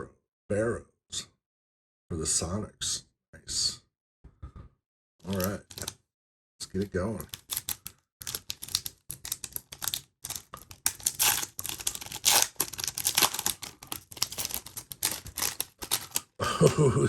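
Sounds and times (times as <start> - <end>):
cards clicking and rustling: 5.2 - 6.0, 6.6 - 16.8
loud scraping rustles of cards: 5.2 - 6.0, 6.8 - 16.4.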